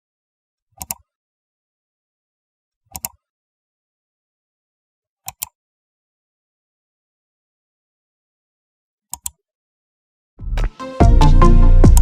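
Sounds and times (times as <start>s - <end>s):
mouse button clicking: 9.1s - 9.4s.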